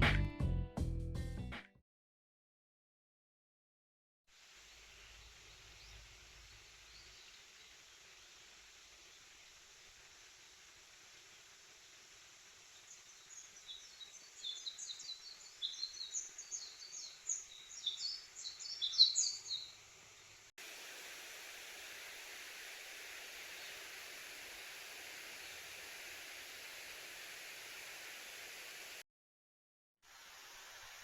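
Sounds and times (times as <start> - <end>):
steady rushing hiss: 4.3 - 29.0, 30.0 - 31.0
songbird singing rapid chirps: 4.7 - 8.4, 12.6 - 20.5.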